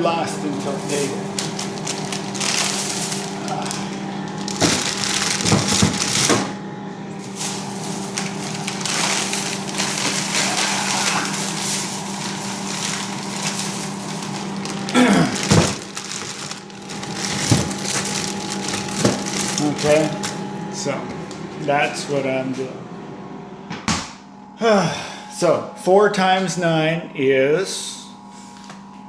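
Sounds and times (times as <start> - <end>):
low electrical hum: 0.0 - 29.0
rustling and crinkling: 0.6 - 6.5, 7.2 - 20.4.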